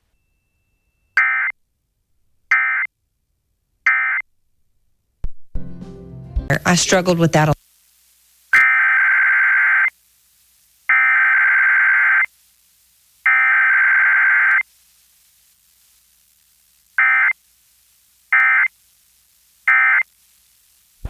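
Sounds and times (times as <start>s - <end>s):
screeching data tone bursts: 1.2s - 1.5s, 2.5s - 2.9s, 3.9s - 4.2s, 8.5s - 10.0s, 10.9s - 12.3s, 13.2s - 14.7s, 17.0s - 17.4s, 18.3s - 18.7s, 19.7s - 20.1s.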